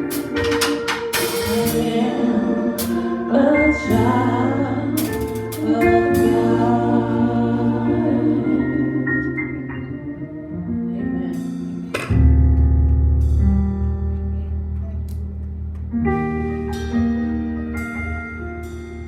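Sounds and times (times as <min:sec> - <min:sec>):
sustained chords: 0:00.0 - 0:13.6.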